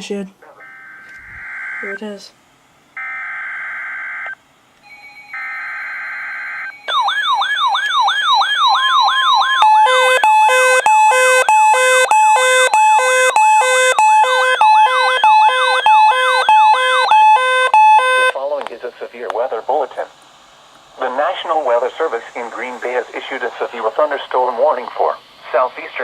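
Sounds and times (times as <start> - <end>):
electronic alert tone: 4.8 - 7.3
screechy digital data burst: 4.9 - 18.2, 21.0 - 25.9.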